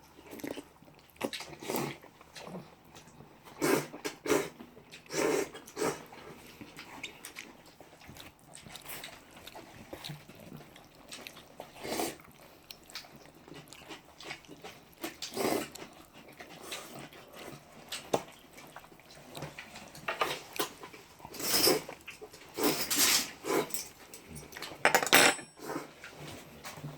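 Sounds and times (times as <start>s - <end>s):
people slurping noodles: 3.5s - 6.4s, 11.7s - 12.3s, 15.2s - 15.8s.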